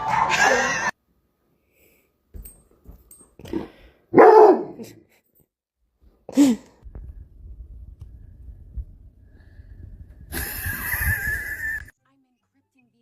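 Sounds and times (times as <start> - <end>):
dog barking: 4.1 - 5.0.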